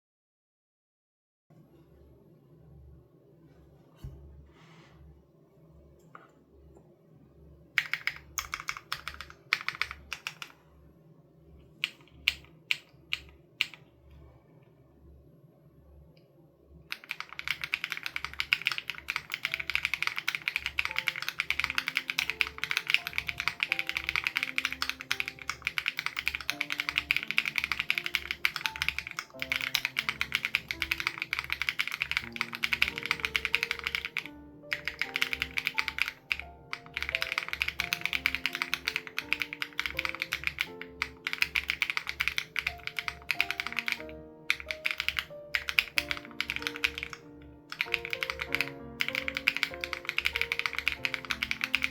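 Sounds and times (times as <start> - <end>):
mechanical keyboard typing: 7.8 - 10.6, 11.8 - 13.8, 16.9 - 51.9
soft background music: 16.9 - 51.9.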